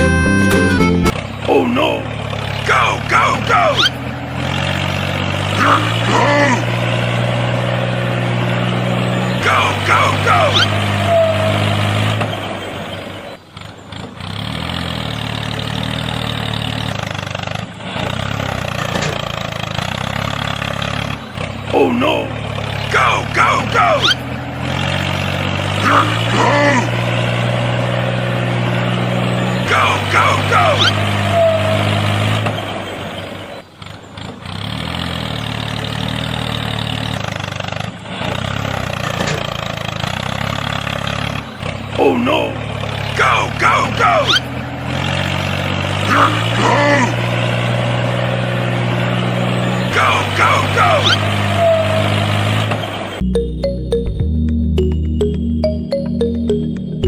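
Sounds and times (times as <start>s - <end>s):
tractor engine humming: 0.0s - 57.0s.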